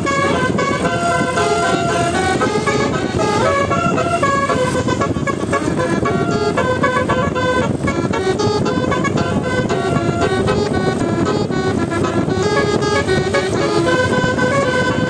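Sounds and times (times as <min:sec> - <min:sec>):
air horns playing a quick melody: 0:00.0 - 0:15.0.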